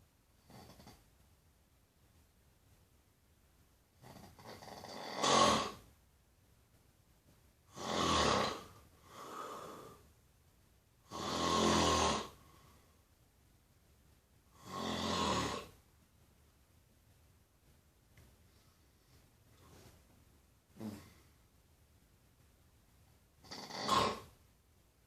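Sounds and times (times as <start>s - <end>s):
person snoring: 4.0s - 5.8s, 7.7s - 10.0s, 11.1s - 12.4s, 14.5s - 15.8s, 20.8s - 21.2s, 23.4s - 24.4s
soft breath: 8.9s - 10.1s, 18.4s - 20.1s.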